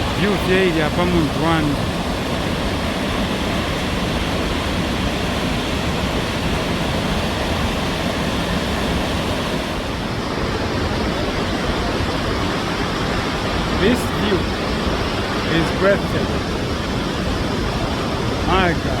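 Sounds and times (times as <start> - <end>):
waterfall rushing: 0.0 - 19.0.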